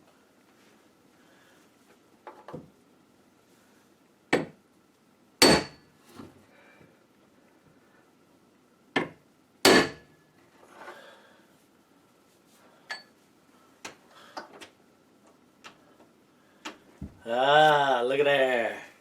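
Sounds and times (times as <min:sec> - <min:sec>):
sledgehammer striking brass: 0:05.4 - 0:05.8.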